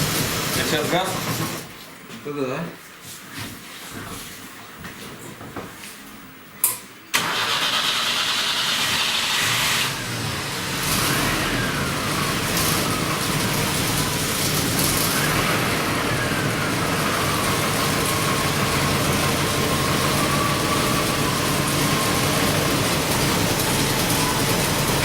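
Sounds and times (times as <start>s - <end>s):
car engine idling: 7.2s - 25.0s.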